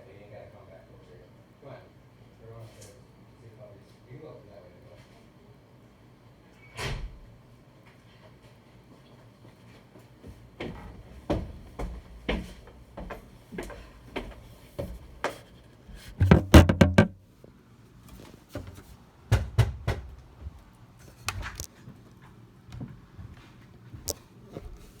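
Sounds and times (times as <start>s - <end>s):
footsteps thumping up stairs: 10.6s - 15.4s, 16.0s - 17.2s
knocks and clatter: 16.0s - 17.2s.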